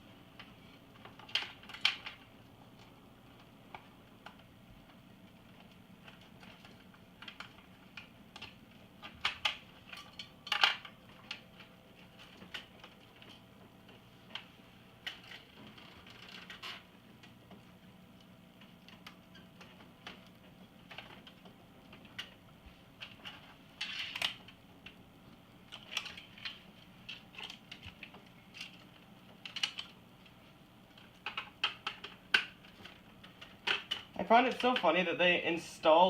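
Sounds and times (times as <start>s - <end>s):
faint steady hum: 0.0s - 36.0s
plastic and metal parts handled: 25.7s - 30.0s.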